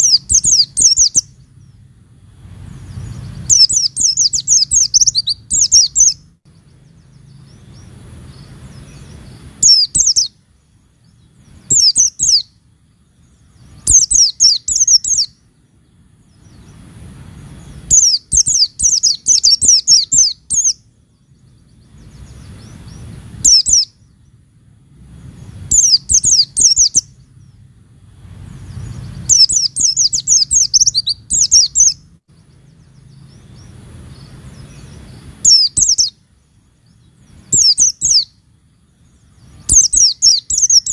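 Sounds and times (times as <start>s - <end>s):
faint low rumble: 0.0s - 40.9s
bird chirping high notes: 2.6s - 10.4s, 28.6s - 36.2s.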